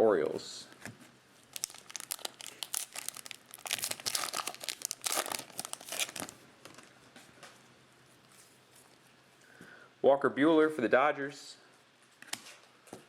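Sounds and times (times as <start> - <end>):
foil wrapper crinkling and tearing: 1.5 - 6.4.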